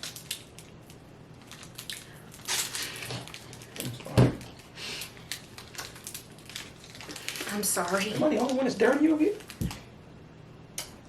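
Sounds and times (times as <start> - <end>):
plastic wrapper crinkling: 0.0 - 9.9.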